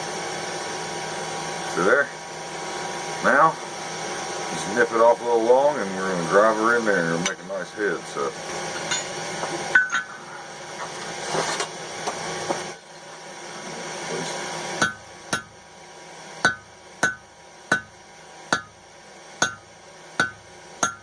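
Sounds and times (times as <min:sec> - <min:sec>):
hammer striking hot steel: 0:08.7 - 0:10.9, 0:14.8 - 0:15.6, 0:16.4 - 0:21.0.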